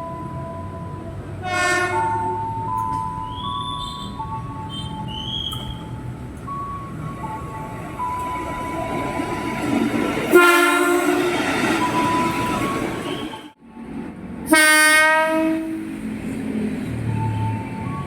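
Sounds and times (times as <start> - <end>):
train running noise: 0.0 - 18.0
electric train horn blasts: 1.4 - 2.4, 10.3 - 13.5, 14.5 - 15.9.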